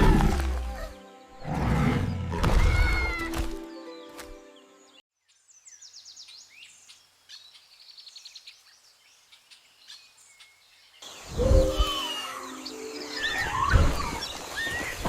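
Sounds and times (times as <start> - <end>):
music: 0.0 - 5.0, 11.4 - 13.7
high bird chirps and trills: 0.7 - 15.0.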